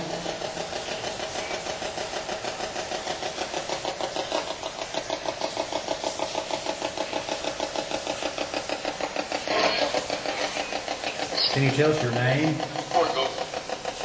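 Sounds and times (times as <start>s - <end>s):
pulsing radio static: 8.1s - 14.0s.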